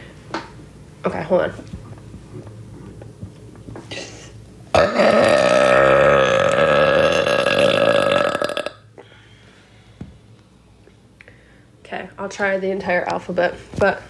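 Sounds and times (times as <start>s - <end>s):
woman burping: 4.8s - 8.8s.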